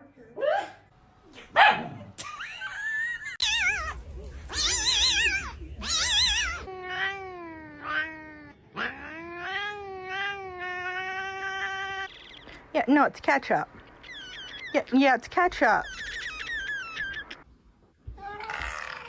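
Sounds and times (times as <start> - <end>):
cats yowling: 3.2 - 12.3, 13.8 - 14.9, 15.7 - 17.5, 18.2 - 19.0
cat meowing calls: 3.4 - 12.2, 15.8 - 17.4, 18.1 - 19.0.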